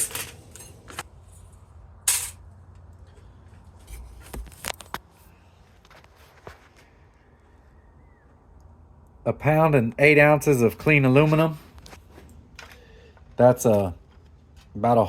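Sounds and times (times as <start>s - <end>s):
scrap metal scraping rustle: 0.0s - 6.9s.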